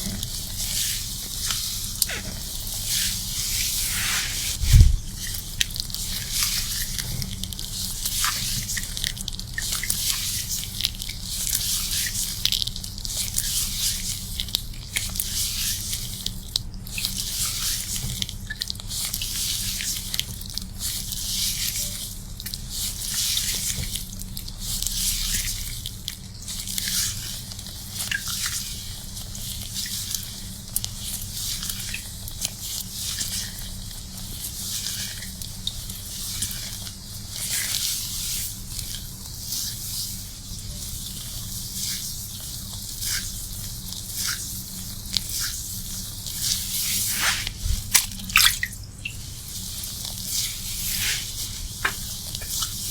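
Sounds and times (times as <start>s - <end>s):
wet hair scrubbing: 1.7s - 5.2s, 46.4s - 48.6s, 49.4s - 52.9s
steady low hum: 3.7s - 5.2s.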